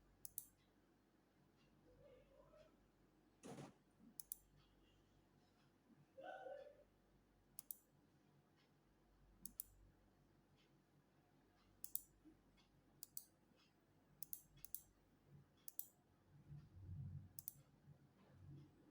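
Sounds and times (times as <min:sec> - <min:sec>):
faint low rumble: 0:16.4 - 0:18.9.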